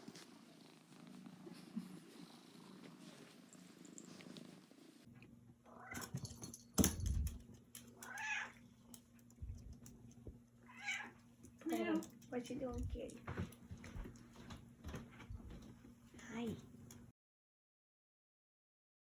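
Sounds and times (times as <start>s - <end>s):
cat purring: 0.0s - 5.1s.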